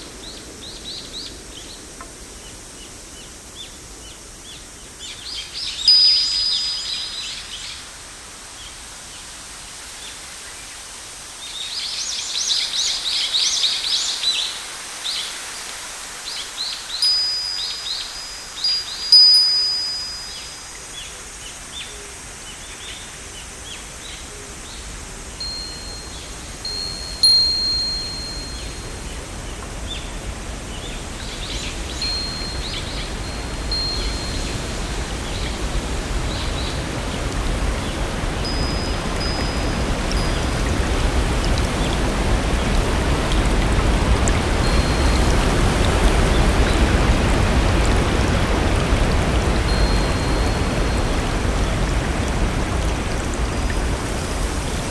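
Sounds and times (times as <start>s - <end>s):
rain hissing: 0.0s - 54.9s
wind chimes: 5.6s - 7.8s, 16.8s - 21.3s, 25.2s - 53.1s.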